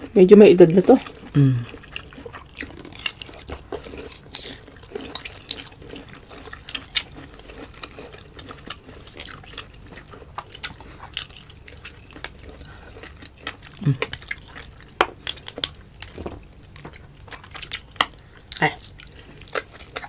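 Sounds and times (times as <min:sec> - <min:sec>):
wet chewing and mouth smacks: 0:01.0 - 0:20.0.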